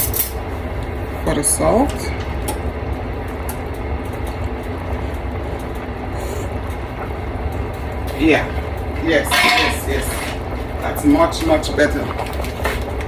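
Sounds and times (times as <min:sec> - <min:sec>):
low rumbling noise: 0:00.4 - 0:13.0.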